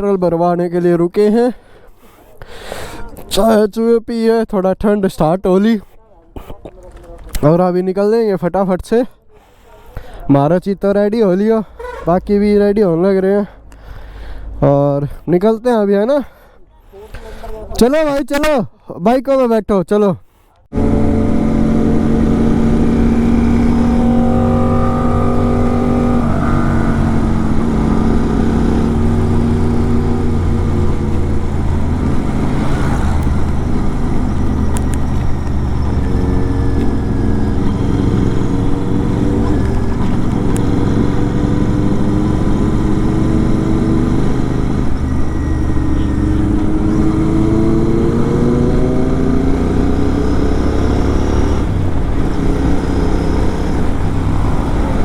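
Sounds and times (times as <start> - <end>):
motorcycle engine revving: 20.7 - 55.0.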